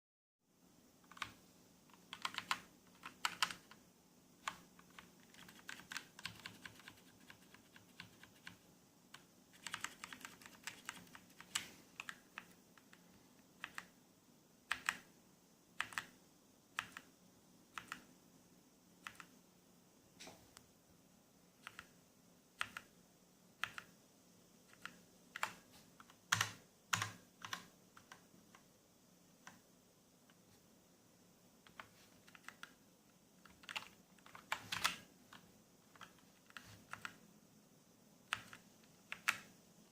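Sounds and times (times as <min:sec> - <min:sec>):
mechanical keyboard typing: 0:01.1 - 0:03.8, 0:04.4 - 0:13.0, 0:13.6 - 0:13.9, 0:14.7 - 0:15.1, 0:15.8 - 0:16.2, 0:16.8 - 0:17.1, 0:17.8 - 0:18.1, 0:19.0 - 0:19.3, 0:21.6 - 0:22.0, 0:22.6 - 0:22.9, 0:23.6 - 0:24.0, 0:24.7 - 0:28.2, 0:31.7 - 0:32.8, 0:33.4 - 0:37.2, 0:38.3 - 0:39.9.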